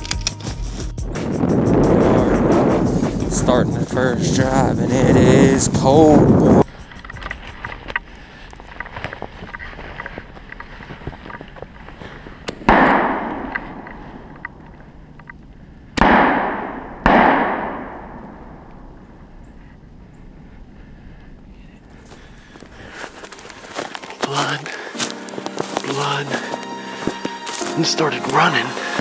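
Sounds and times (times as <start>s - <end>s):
shotgun shots with echo: 12.7s - 13.8s, 16.0s - 18.6s.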